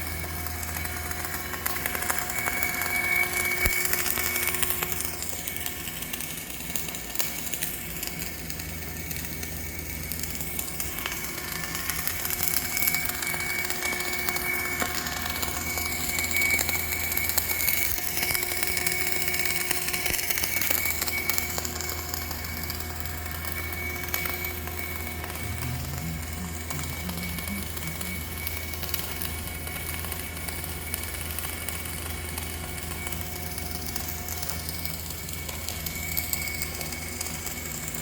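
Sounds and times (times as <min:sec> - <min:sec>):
welding arc crackling and hissing: 0:00.0 - 0:38.0
faint high whine: 0:10.0 - 0:38.0
steady low hum: 0:24.6 - 0:28.8.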